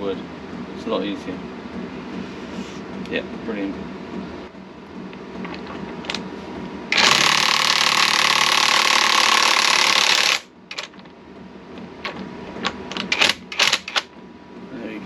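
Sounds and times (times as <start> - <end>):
impact wrench hammering: 6.9 - 10.5.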